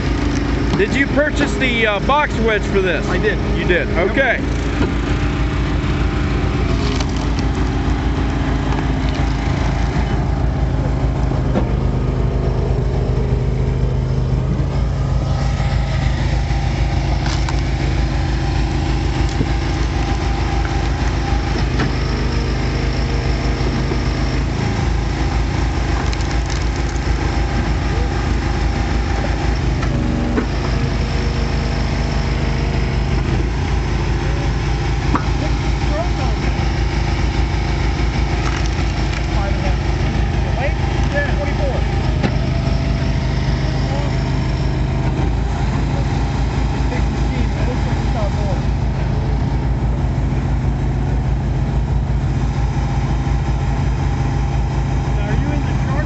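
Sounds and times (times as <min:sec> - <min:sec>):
log splitter engine running: 0:00.0 - 0:56.0
wood splitting cracks: 0:06.7 - 0:07.8, 0:17.2 - 0:17.8, 0:25.9 - 0:27.2, 0:38.3 - 0:39.4.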